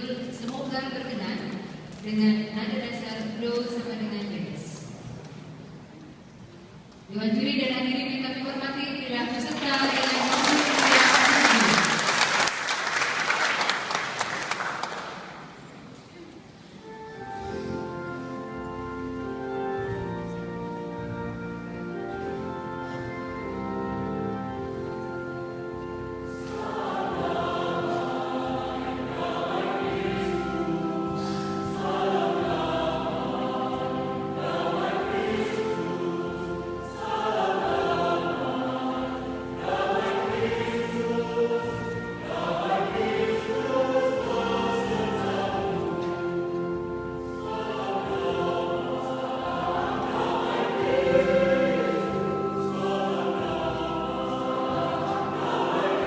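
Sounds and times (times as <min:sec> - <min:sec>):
choir singing: 0:24.3 - 0:56.0.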